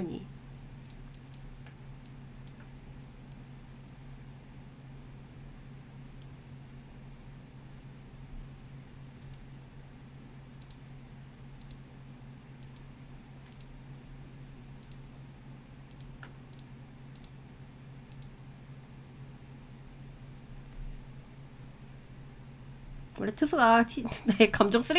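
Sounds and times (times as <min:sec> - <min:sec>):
steady low hum: 0:00.0 - 0:24.9
computer mouse clicking: 0:00.8 - 0:02.7, 0:03.3 - 0:03.5, 0:09.2 - 0:09.5, 0:10.6 - 0:10.8, 0:11.6 - 0:11.8, 0:12.6 - 0:13.8, 0:14.8 - 0:15.1, 0:15.9 - 0:17.4, 0:18.1 - 0:18.4.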